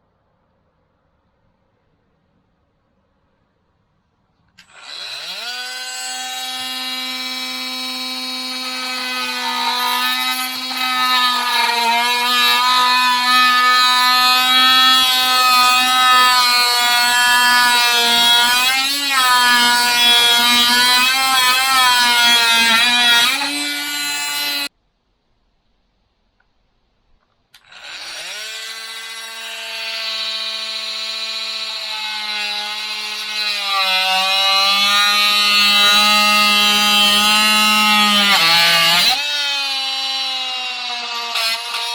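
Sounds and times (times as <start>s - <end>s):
oscillating multi-tool buzzing: 4.6s - 24.7s, 27.6s - 41.9s.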